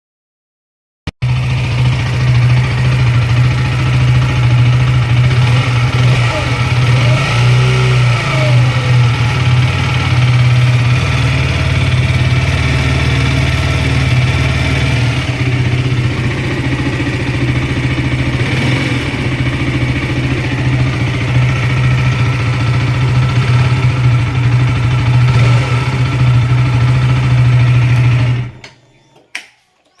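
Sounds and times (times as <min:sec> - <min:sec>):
motorcycle engine idling: 0:01.2 - 0:28.7.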